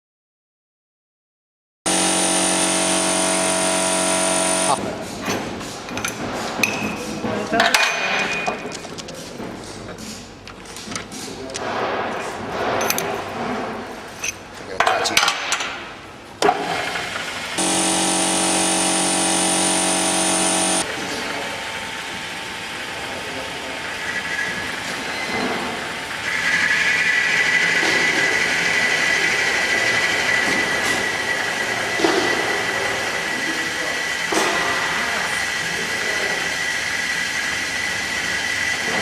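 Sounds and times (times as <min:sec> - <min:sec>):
machine high whine: 0:01.9 - 0:04.8, 0:17.5 - 0:39.0
machine humming: 0:01.9 - 0:04.8, 0:17.5 - 0:22.9.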